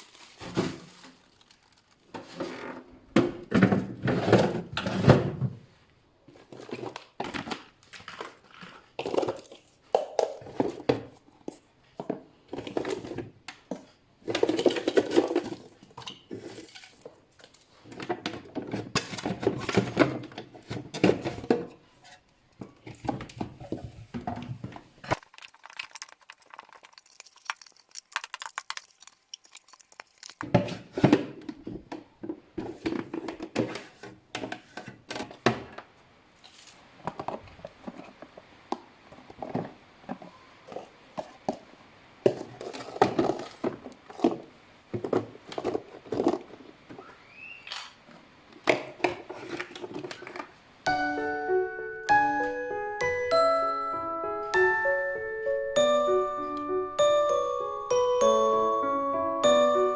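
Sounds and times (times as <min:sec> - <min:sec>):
plastic crinkling and tearing: 0:00.0 - 0:02.3, 0:25.1 - 0:30.6.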